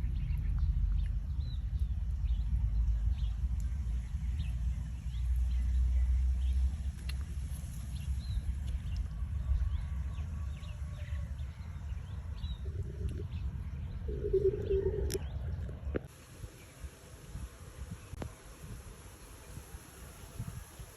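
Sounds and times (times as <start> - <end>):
small birds chirping: 0.0 - 16.8
low rumble: 8.0 - 16.1
brief steady tones: 14.0 - 15.3.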